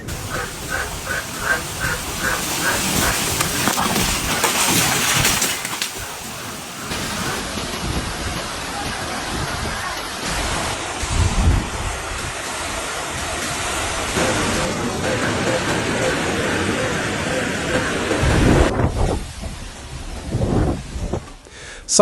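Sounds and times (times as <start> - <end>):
wind and heavy rain: 0.0 - 22.0.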